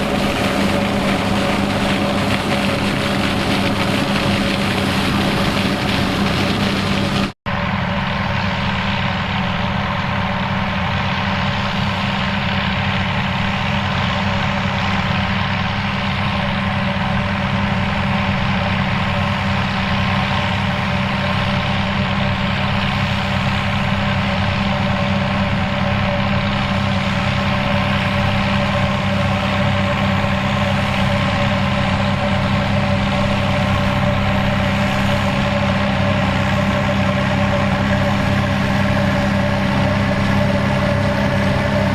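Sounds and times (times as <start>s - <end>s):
tractor diesel engine running: 0.0s - 41.9s.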